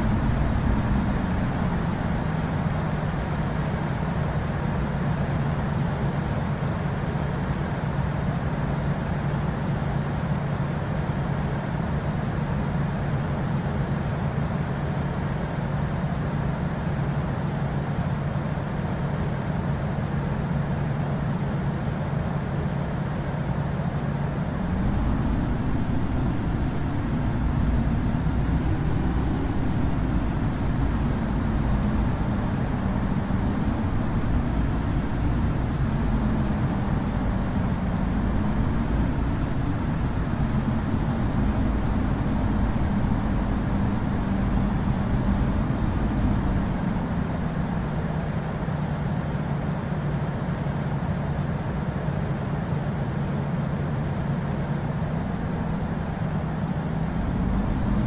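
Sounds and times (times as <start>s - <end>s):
thin high whine: 0.0s - 4.1s, 24.6s - 48.4s, 54.9s - 58.0s
jet engines heard from cabin: 0.0s - 58.0s.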